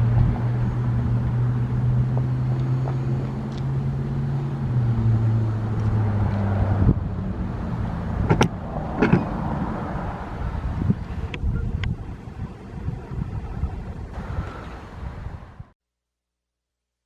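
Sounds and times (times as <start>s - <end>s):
siren winding down: 10.3s - 15.4s.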